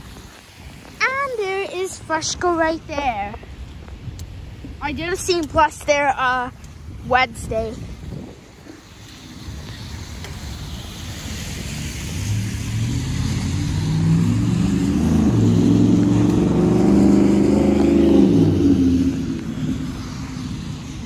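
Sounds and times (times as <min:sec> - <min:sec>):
tyres hissing on wet road: 0:00.0 - 0:07.0, 0:07.6 - 0:21.0
vehicle engine accelerating: 0:08.9 - 0:21.0.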